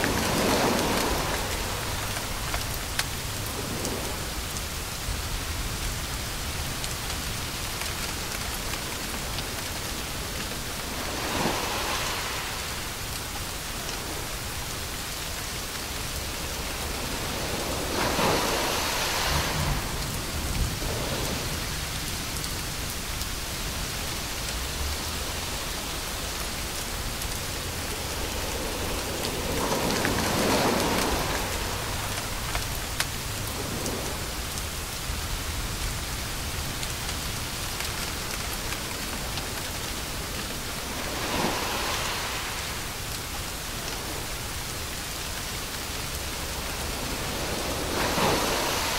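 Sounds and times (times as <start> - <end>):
white noise hiss: 0.0 - 48.9.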